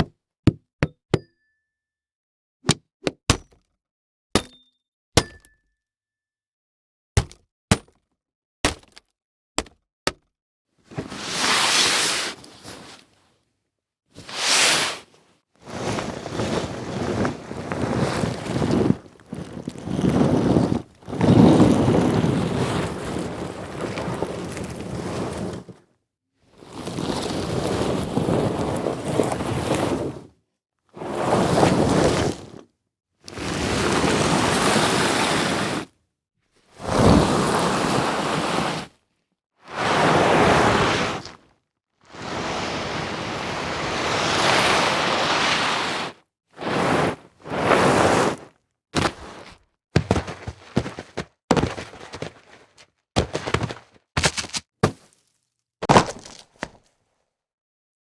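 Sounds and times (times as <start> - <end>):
short sharp hits and thuds: 53.2 - 55.1.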